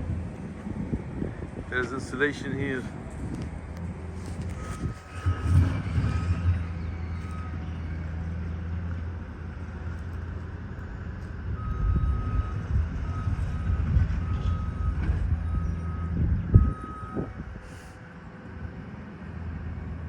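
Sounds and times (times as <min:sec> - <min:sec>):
heavy vehicle engine running: 0:00.0 - 0:20.0
back-up alarm beeping: 0:11.6 - 0:17.3.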